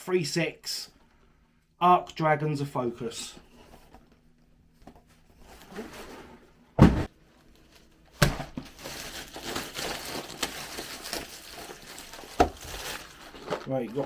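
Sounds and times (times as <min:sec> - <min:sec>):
boxes thumping down: 0:06.8 - 0:07.1
packaging rustling and crinkling: 0:07.4 - 0:14.0.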